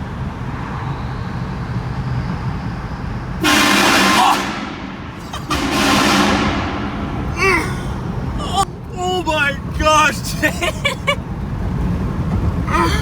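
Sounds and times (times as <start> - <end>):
car road rumble: 0.0 - 13.0
air train horn blasts: 3.4 - 7.3.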